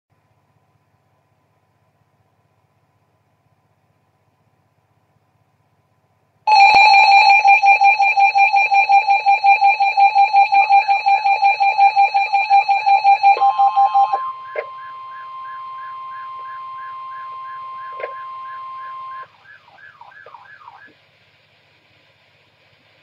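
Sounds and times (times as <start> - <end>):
pulsing bell-like alarm: 6.5 - 20.9.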